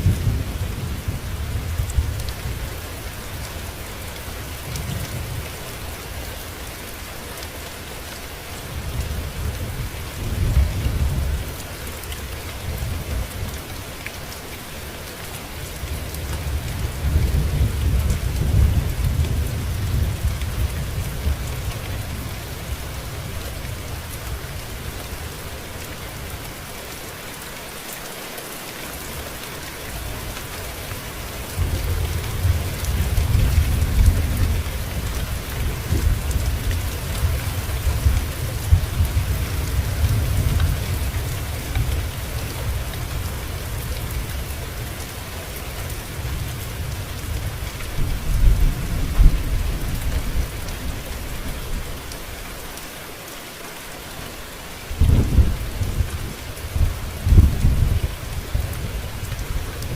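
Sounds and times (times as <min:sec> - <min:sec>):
steady rain falling: 0:00.0 - 0:59.9
thunder rumbling: 0:46.1 - 0:51.0, 0:55.0 - 0:59.9.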